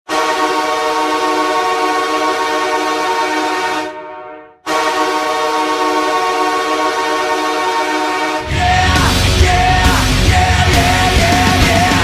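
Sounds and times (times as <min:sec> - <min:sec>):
goal horn blasting: 0:00.1 - 0:08.6.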